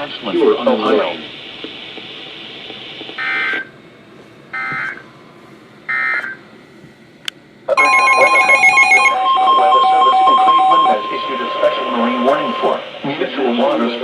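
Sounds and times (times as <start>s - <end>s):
electronic multi-tone signal: 7.8s - 12.8s.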